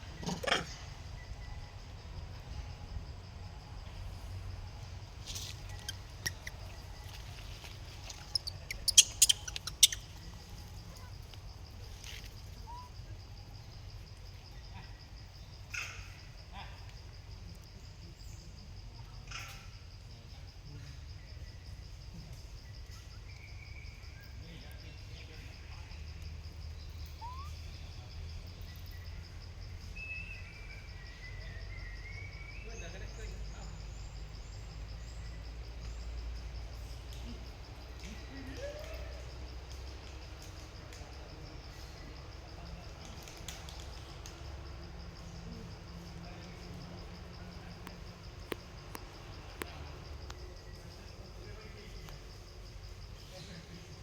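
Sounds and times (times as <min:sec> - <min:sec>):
insect chirping: 0:00.0 - 0:54.0
monkey squeaks and clicks: 0:05.4 - 0:07.4, 0:08.0 - 0:10.4, 0:27.1 - 0:27.6
rising whistled call: 0:27.2 - 0:27.6.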